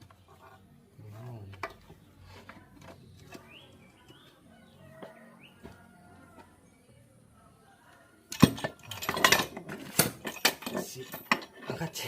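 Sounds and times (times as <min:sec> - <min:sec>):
bird chirping: 0:00.0 - 0:07.1
metal tools clicking: 0:08.3 - 0:11.8.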